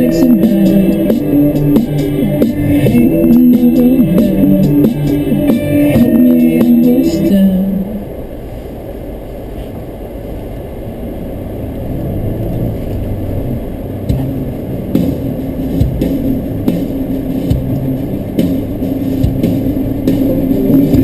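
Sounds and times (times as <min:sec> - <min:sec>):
car engine and road noise: 0:00.0 - 0:21.0
sharp knocks: 0:14.1 - 0:17.8.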